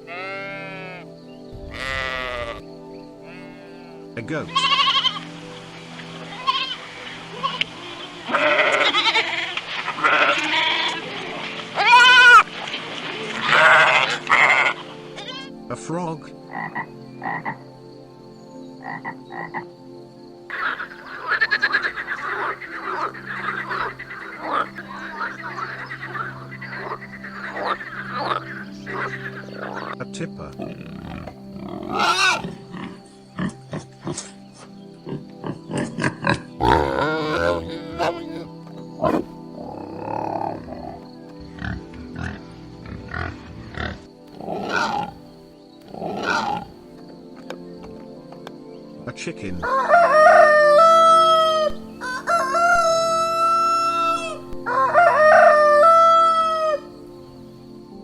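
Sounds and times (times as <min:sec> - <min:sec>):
background music: 0:00.0 - 0:58.0
frogs croaking: 0:00.0 - 0:58.0
pig grunting: 0:27.6 - 0:34.4, 0:35.1 - 0:45.2, 0:45.9 - 0:46.8.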